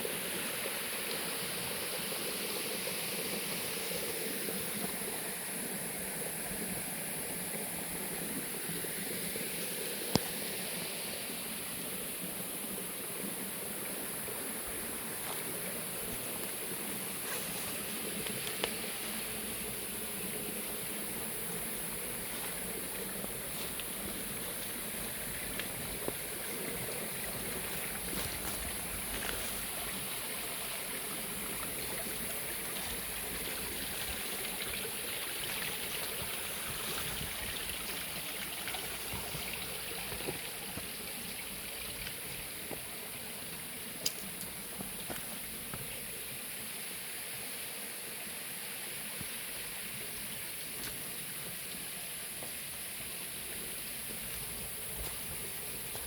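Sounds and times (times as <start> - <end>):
high-pitched hiss: 0.0 - 56.0
faint ticks: 18.2 - 18.8, 44.0 - 45.9.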